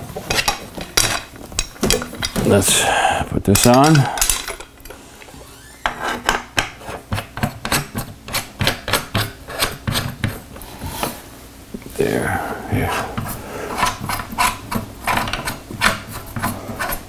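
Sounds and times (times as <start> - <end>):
rasping scrapes of hardware: 12.8 - 17.0.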